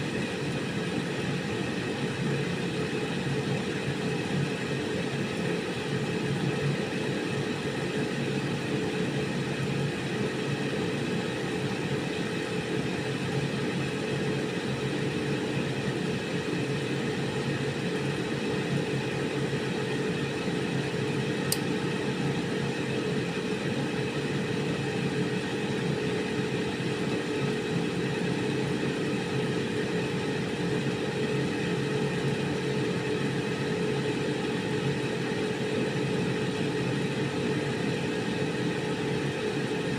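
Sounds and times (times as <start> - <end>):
air fryer whirring hum: 0.0 - 39.9
short tick: 21.5 - 21.7.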